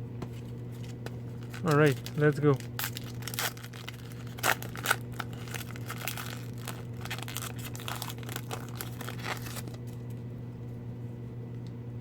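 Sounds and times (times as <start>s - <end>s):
plastic wrapper crinkling: 0.8s - 10.1s.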